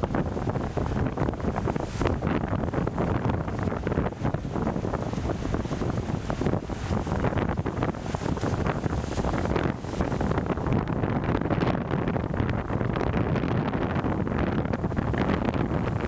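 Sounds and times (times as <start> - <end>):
faint surf: 0.0 - 10.9
wind buffeting microphone: 0.0 - 16.0.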